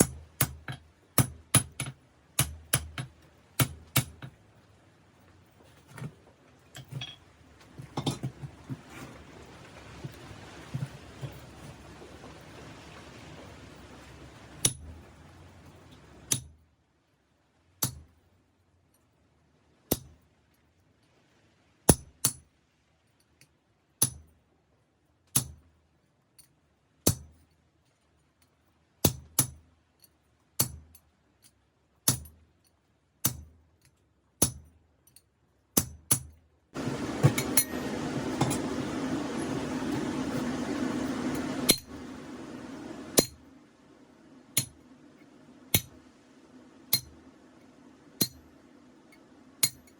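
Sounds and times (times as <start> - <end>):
hammer striking anvil: 36.8 - 40.1, 41.2 - 42.0, 43.2 - 43.4, 45.7 - 46.0, 48.2 - 48.4, 49.6 - 49.9
steady hiss: 36.8 - 49.9.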